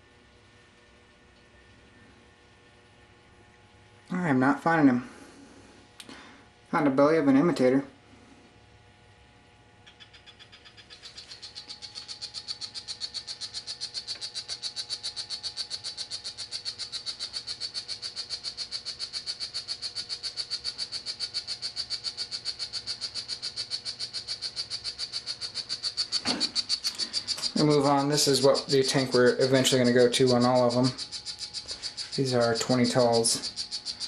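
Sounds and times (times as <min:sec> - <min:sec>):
frog high rapid chirps: 0:09.9 - 0:34.0.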